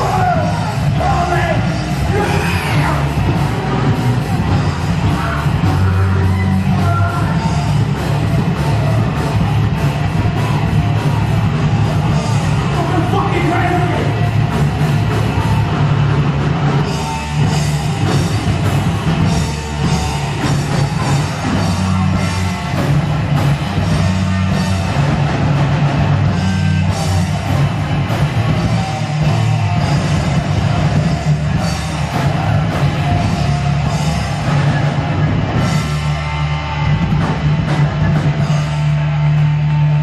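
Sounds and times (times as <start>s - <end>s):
yelled vocals: 0.0s - 38.5s
drum kit beat: 0.0s - 40.0s
heavy metal band playing: 0.0s - 40.0s.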